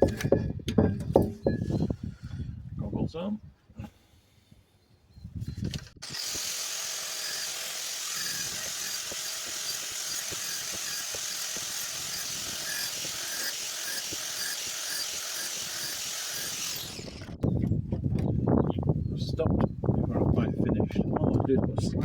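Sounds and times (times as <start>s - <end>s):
angle grinder on metal: 6.0s - 17.4s.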